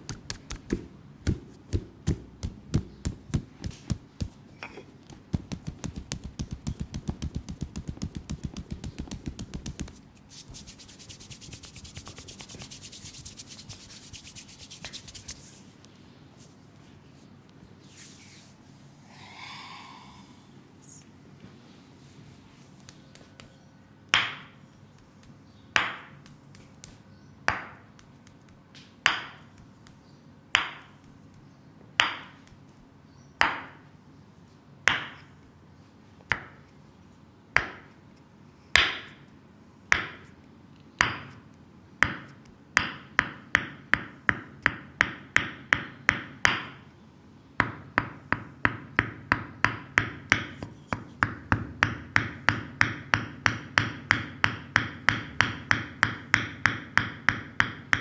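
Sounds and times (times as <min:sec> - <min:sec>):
percussive massage smacks on skin: 0:00.1 - 0:04.4, 0:05.1 - 0:15.5, 0:25.0 - 0:30.0.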